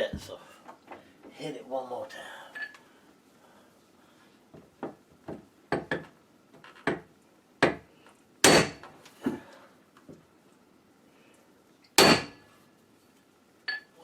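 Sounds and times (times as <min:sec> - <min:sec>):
tool knocking on metal hinge: 0:05.7 - 0:06.1.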